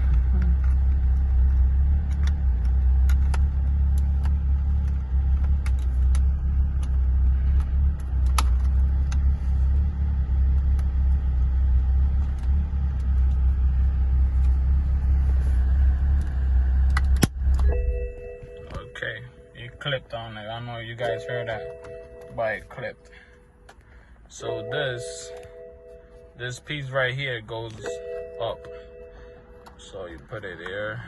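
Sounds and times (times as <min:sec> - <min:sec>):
steady low rumble: 0:00.0 - 0:31.0.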